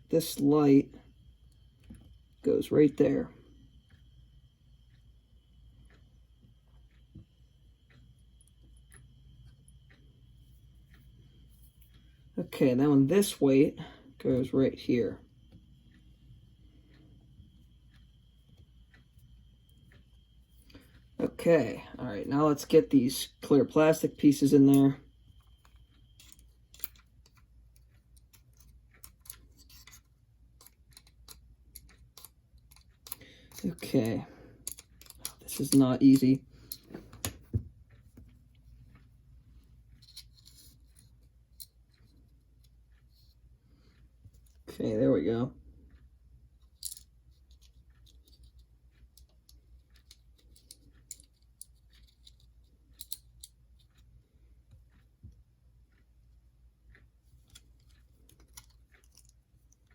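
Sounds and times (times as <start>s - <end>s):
low steady hum: 0.0s - 59.9s
small parts clicking and tapping: 1.4s - 3.2s, 4.8s - 44.8s, 45.7s - 59.9s
small plastic parts clicking: 25.6s - 37.6s, 40.0s - 43.3s, 46.6s - 54.0s.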